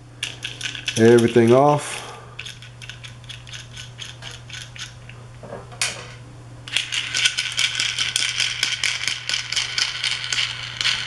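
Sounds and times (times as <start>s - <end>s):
steady low hum: 0.0s - 11.0s
small hardware rattling and clicking: 0.2s - 1.7s, 2.4s - 5.0s.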